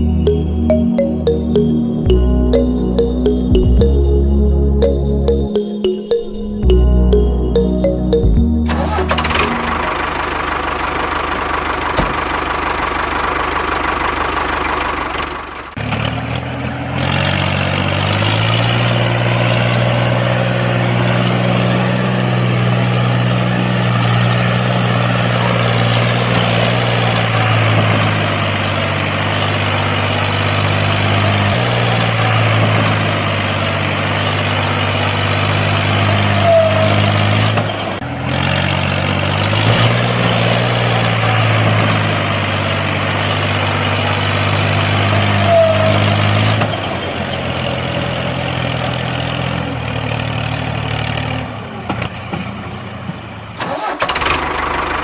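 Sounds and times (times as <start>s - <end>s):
tractor engine idling: 8.2s - 16.9s.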